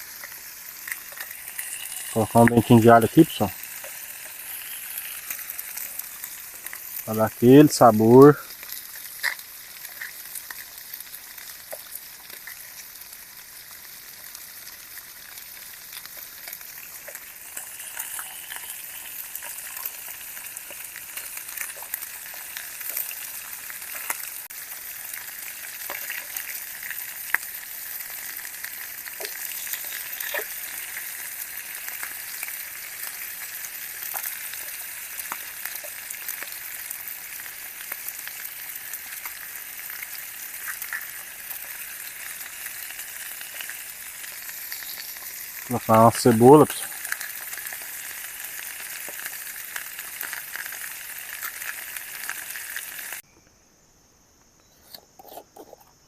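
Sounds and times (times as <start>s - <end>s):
garlic sizzling in hot oil: 0.0s - 53.2s.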